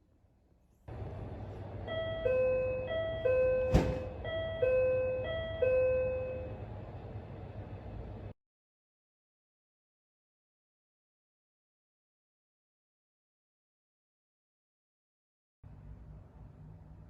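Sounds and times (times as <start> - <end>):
electronic two-tone chime: 1.9 - 6.5.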